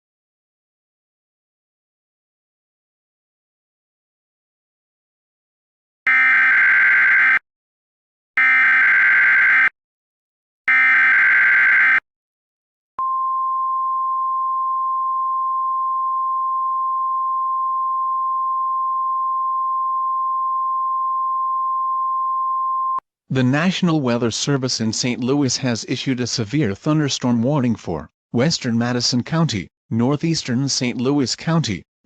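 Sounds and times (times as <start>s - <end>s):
steady warning alarm tone: 6.1s - 7.4s, 8.4s - 9.7s, 10.7s - 12.0s.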